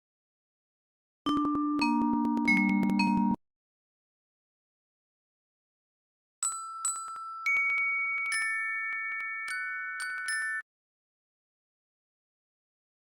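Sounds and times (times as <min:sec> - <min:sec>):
bell-like chime tones: 0:01.3 - 0:03.4, 0:06.4 - 0:10.7.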